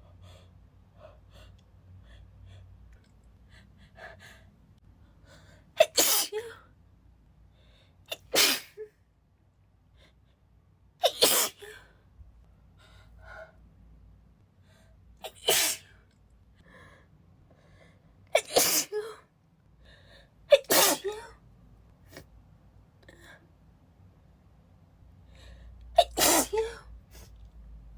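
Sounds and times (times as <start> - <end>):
faint in-breaths: 0.0 - 5.8, 7.5 - 8.1, 11.6 - 13.7, 14.6 - 15.1, 16.6 - 18.2, 19.7 - 20.5, 25.2 - 26.0
woman sneezing: 5.8 - 6.6, 8.1 - 8.9, 11.0 - 11.8, 15.3 - 15.9, 18.4 - 19.2, 20.5 - 21.4, 26.0 - 27.3.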